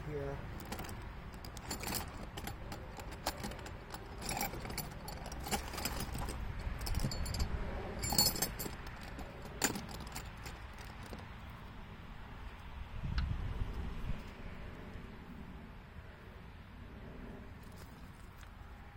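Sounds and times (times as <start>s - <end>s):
metal hand tools clinking: 0.6s - 11.2s.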